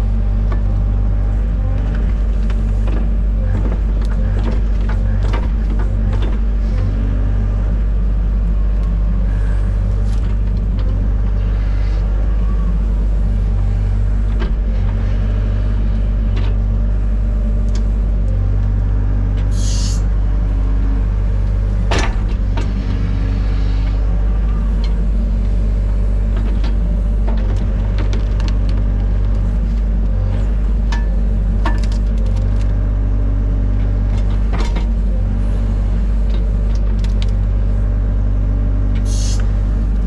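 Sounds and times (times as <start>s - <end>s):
excavator diesel engine running: 0.0s - 40.0s.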